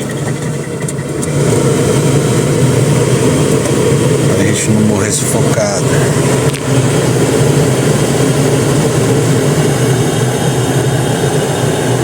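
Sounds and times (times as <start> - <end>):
car engine idling: 0.0 - 12.0
ventilation fan blowing: 0.0 - 12.0.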